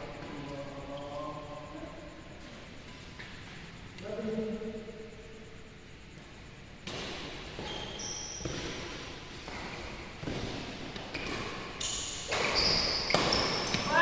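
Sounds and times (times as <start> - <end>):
shoes squeaking on floor: 7.4 - 14.0
racket striking shuttlecock: 8.4 - 13.9.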